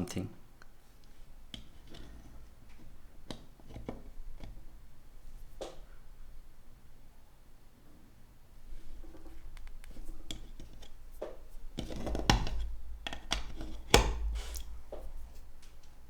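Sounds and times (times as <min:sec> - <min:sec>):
phone and cable clicking and scraping: 0:01.6 - 0:04.6.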